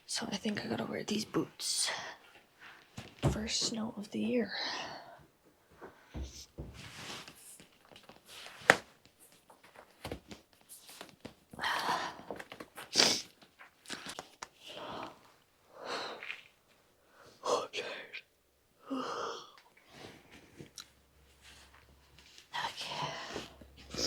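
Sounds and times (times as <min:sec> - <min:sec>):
footsteps indoors: 0:05.2 - 0:14.4.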